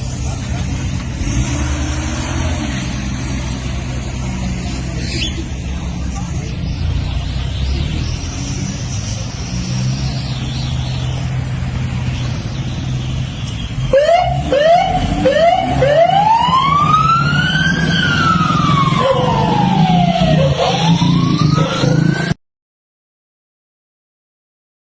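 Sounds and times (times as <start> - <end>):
vehicle engine rumble: 0.0 - 22.4
ambulance siren: 13.9 - 22.4.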